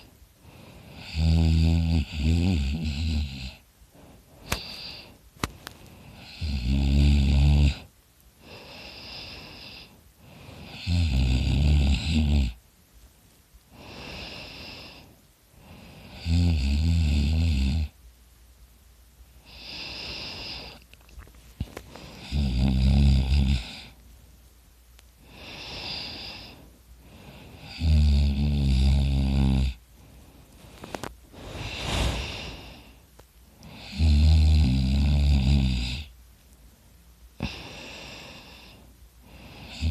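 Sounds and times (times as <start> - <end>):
man snoring loudly: 0.9 - 3.6, 6.2 - 7.9, 10.6 - 12.6, 16.0 - 17.9, 22.2 - 23.9, 27.6 - 29.8, 33.7 - 36.1, 39.6 - 39.9
airy breath: 30.0 - 33.1, 37.4 - 39.9.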